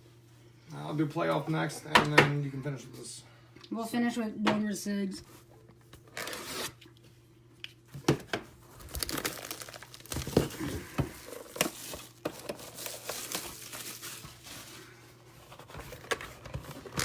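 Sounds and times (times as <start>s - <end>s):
foil wrappers tearing and crinkling: 6.1s - 6.8s, 8.7s - 17.0s.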